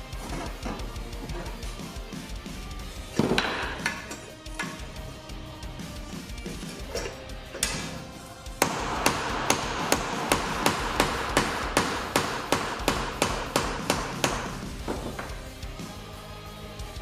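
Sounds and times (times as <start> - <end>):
hammer striking: 3.2 - 4.8, 8.6 - 15.4.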